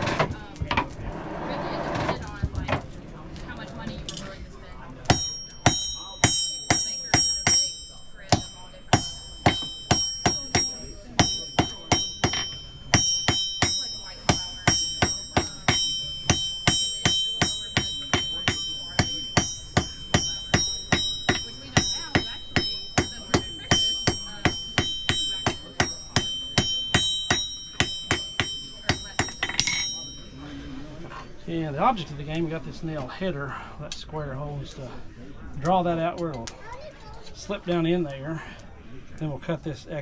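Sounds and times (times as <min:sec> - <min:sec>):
hammer striking iron on anvil: 0:04.2 - 0:31.0.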